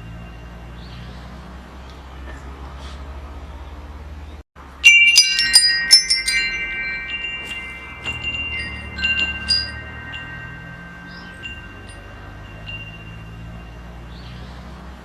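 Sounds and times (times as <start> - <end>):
wind chimes ringing: 0.0 - 1.7, 4.6 - 15.0
low steady rumble: 4.7 - 14.0.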